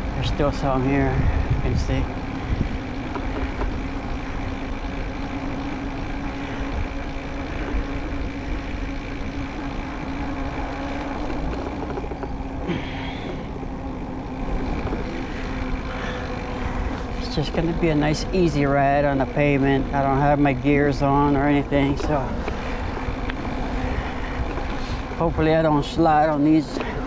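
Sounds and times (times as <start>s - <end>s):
wind on microphone: 0.0s - 4.4s
bike tyres rumbling on wet pavement: 0.0s - 27.0s
car traffic: 0.0s - 27.0s.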